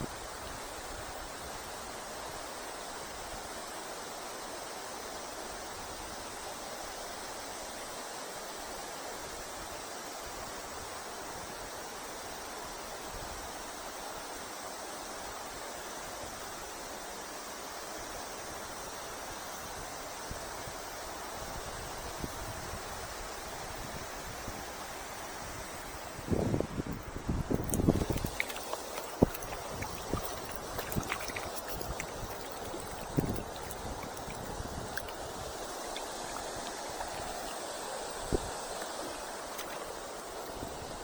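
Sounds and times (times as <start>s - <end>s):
river water rushing: 25.8s - 41.0s.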